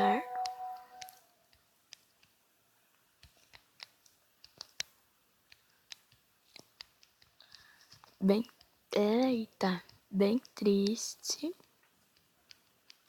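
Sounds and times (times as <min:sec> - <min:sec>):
fingers tapping touchscreen: 0:00.0 - 0:02.4, 0:03.2 - 0:11.0.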